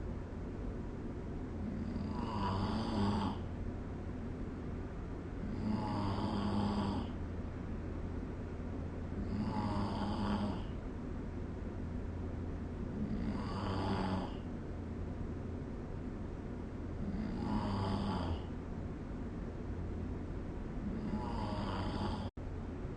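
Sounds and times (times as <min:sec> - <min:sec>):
steady low hum: 0:00.0 - 0:22.9
person snoring: 0:01.6 - 0:03.5, 0:05.4 - 0:07.2, 0:09.2 - 0:10.8, 0:12.9 - 0:14.5, 0:17.0 - 0:18.5, 0:20.8 - 0:22.3.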